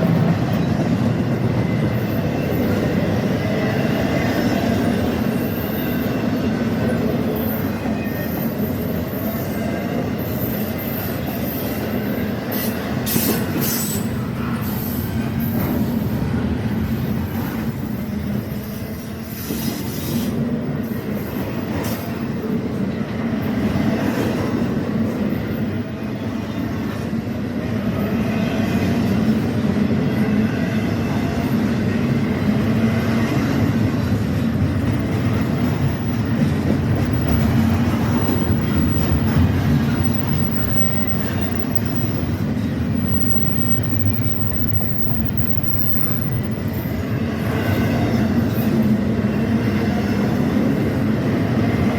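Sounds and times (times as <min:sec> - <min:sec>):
freight train rumbling on rails: 0:00.0 - 0:51.9
faint wheel squeal: 0:37.2 - 0:46.6.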